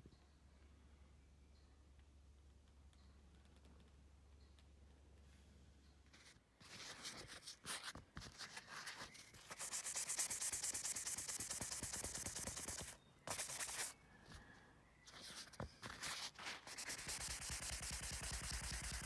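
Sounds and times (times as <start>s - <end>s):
rapid scraping on a surface: 8.5s - 13.9s, 15.2s - 19.0s.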